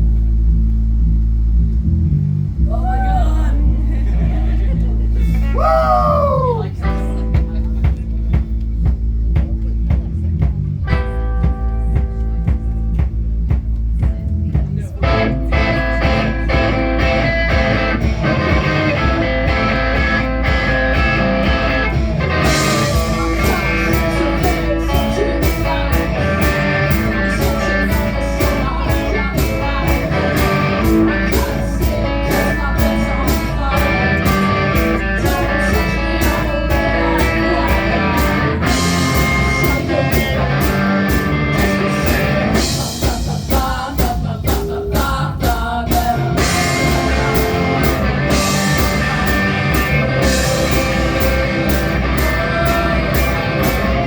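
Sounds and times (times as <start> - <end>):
rock band playing live: 6.8 - 54.0
person singing: 22.4 - 54.0.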